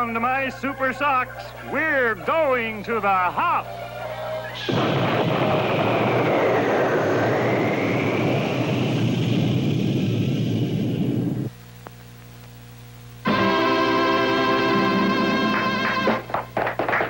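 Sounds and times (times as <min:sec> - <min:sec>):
quiet hum: 0:00.0 - 0:13.3
whistling jet whoosh: 0:04.5 - 0:11.5
music: 0:13.2 - 0:17.0.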